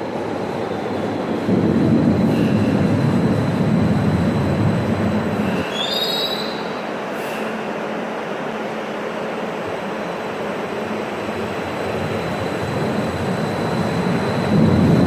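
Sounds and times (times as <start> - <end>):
light-rail train rumbling: 0.0 - 15.0
high wheel squeal: 5.4 - 6.7.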